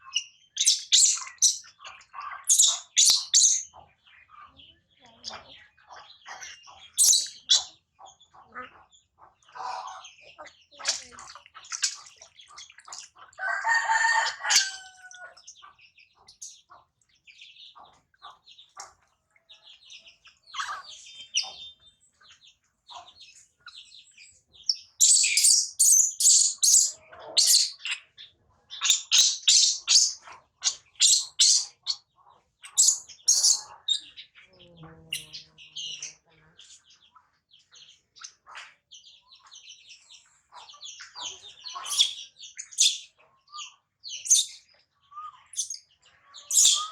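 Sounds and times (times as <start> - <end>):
rapid high-pitched chirping: 24.7 - 27.8.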